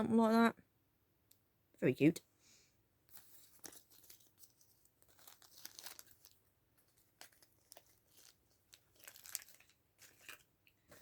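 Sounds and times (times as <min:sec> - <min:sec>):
packaging crinkling and rustling: 0:03.0 - 0:11.0.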